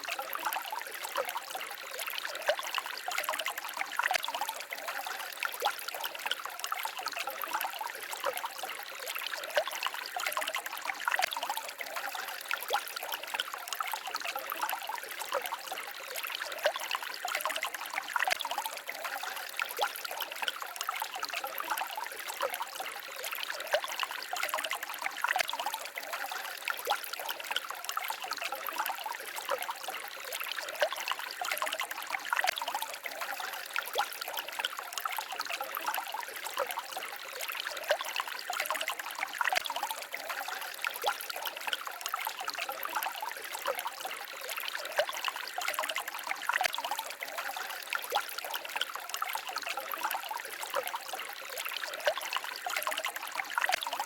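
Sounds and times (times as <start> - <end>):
stream babbling over stones: 0.0 - 54.0.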